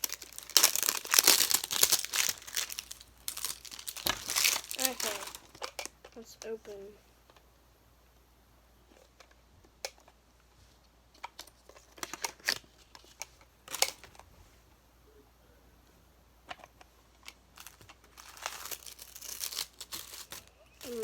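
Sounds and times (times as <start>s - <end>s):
packaging rustling: 0.0s - 5.9s, 17.6s - 21.0s.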